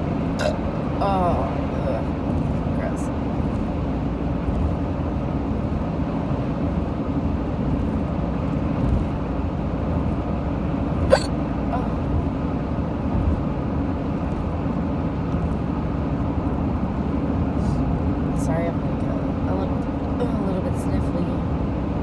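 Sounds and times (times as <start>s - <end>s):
car road noise from inside: 0.0s - 22.0s
woman hiccuping: 0.4s - 0.8s, 11.1s - 12.1s.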